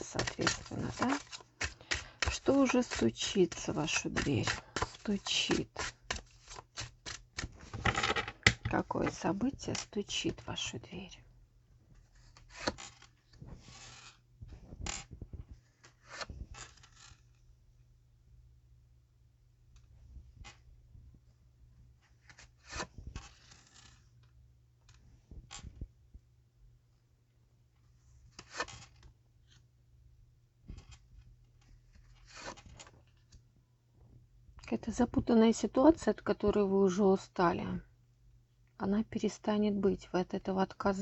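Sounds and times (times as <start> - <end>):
cards shuffling: 0.0 - 10.0, 12.0 - 14.2, 14.8 - 17.4, 22.2 - 24.0, 28.3 - 29.6, 31.9 - 33.4.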